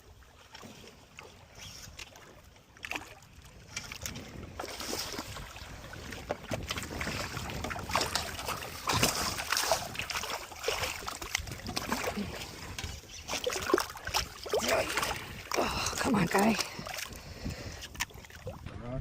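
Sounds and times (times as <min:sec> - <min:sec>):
water sloshing and splashing: 0:00.0 - 0:19.0
knocks and clatter on boat: 0:03.5 - 0:19.0.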